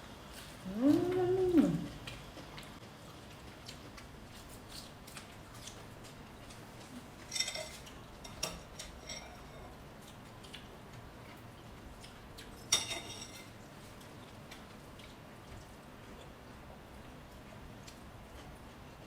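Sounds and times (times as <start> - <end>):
cutlery clinking against dishes: 7.2 - 9.8, 12.6 - 13.6.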